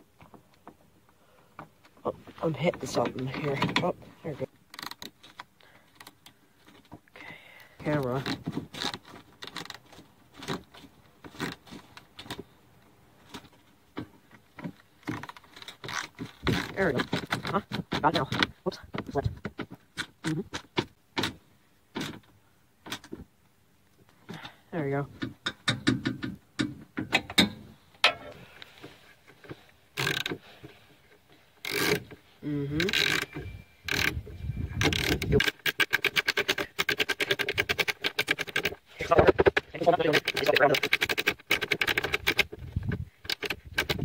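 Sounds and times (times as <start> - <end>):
car-body parts clicking and scraping: 0.0 - 7.2, 7.8 - 44.0.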